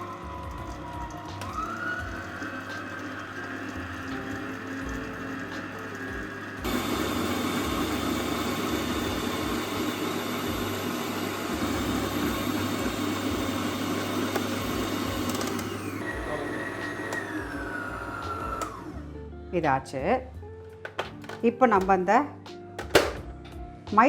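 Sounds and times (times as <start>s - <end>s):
electric blender running: 0.0s - 19.1s.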